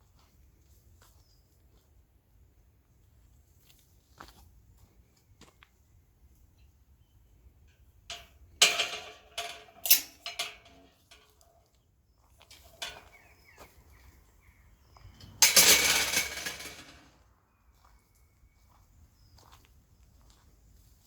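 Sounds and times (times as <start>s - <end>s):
footsteps on woodland path: 3.6s - 5.8s, 17.7s - 21.0s.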